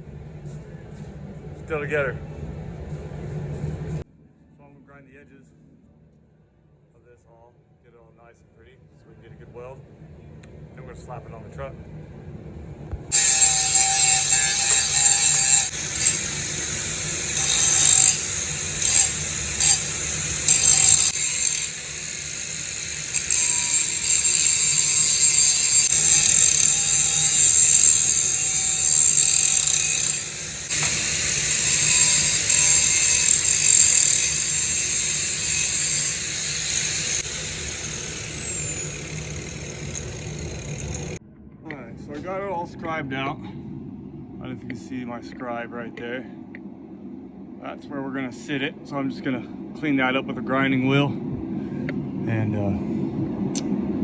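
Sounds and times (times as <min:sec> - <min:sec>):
angle grinder grinding metal: 0:13.1 - 0:41.2.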